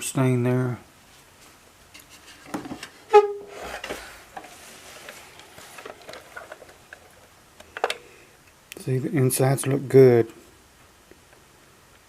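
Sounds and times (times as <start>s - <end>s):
short pitched toot: 3.1s - 3.6s.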